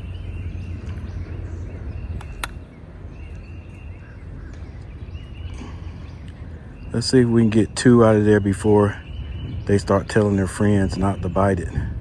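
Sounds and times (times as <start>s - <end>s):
birds chirping: 0.0s - 12.0s
sharp click: 2.2s - 2.6s.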